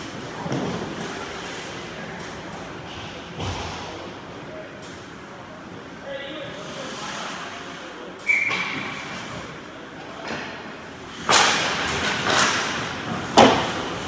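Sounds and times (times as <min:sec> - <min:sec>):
puck and sticks cracking on ice: 0:11.3 - 0:12.8.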